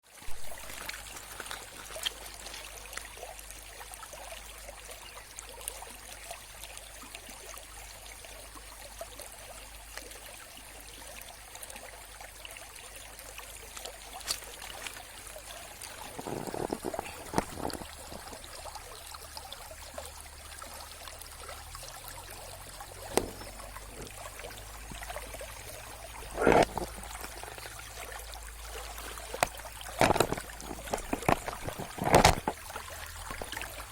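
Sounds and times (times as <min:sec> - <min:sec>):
river water flowing: 0:00.0 - 0:33.9.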